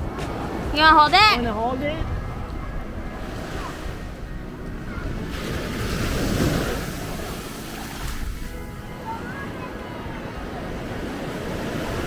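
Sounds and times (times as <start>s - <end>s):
waves washing onto beach: 0.0s - 12.0s
wind buffeting microphone: 0.0s - 12.0s.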